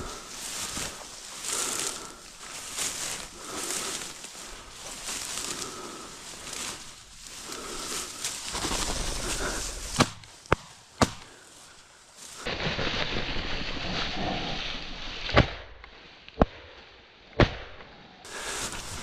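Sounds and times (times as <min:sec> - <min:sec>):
steady rushing noise: 0:07.4 - 0:10.0.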